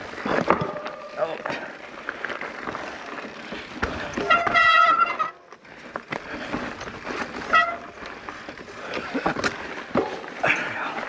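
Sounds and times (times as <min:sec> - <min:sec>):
bike rattling on rough trail: 0:00.0 - 0:11.0
bike disc brakes squealing: 0:04.0 - 0:05.4, 0:07.4 - 0:08.0.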